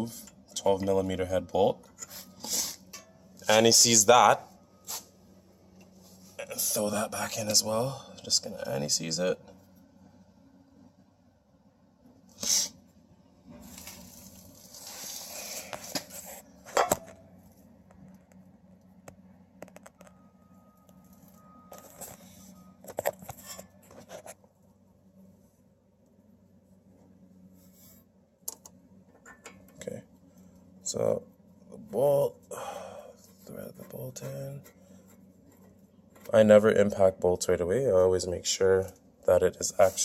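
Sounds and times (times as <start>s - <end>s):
scraping and rustling: 13.5s - 17.8s, 21.7s - 24.6s.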